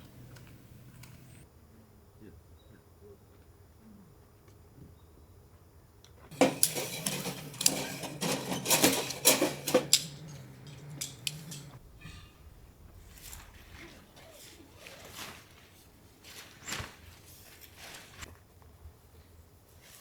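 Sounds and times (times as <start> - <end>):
dishes and metal cookware clattering: 6.3 - 12.4.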